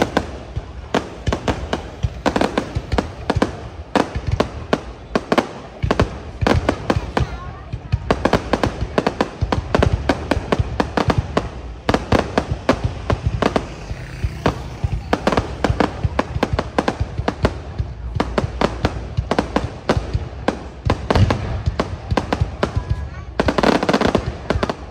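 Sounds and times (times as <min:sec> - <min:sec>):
fireworks explosions: 0:00.0 - 0:24.9.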